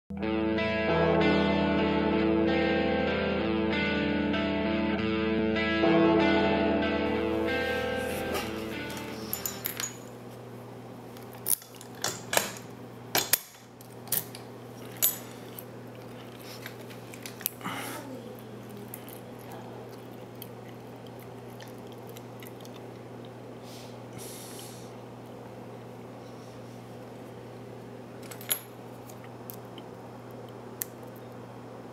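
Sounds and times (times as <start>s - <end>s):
steady low hum: 6.8s - 31.9s.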